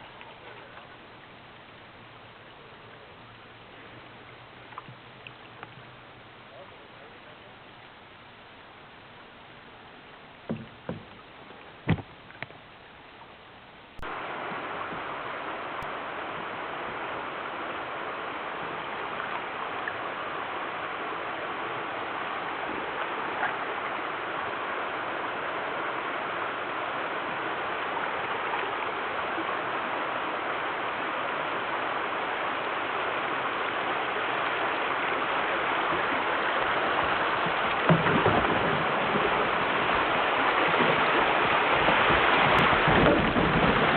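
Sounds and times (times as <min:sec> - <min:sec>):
creek water flowing: 0:00.0 - 0:43.9
sharp knocks: 0:10.5 - 0:11.2, 0:11.9 - 0:12.1.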